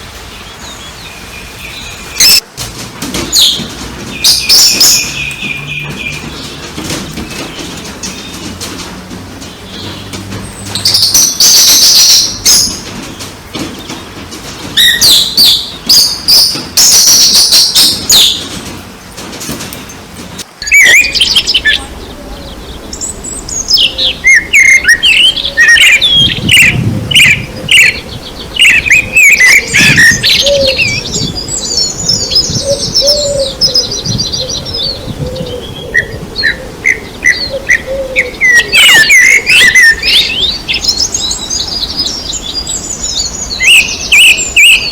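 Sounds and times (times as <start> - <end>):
birds singing and chirping: 0.0 - 44.9.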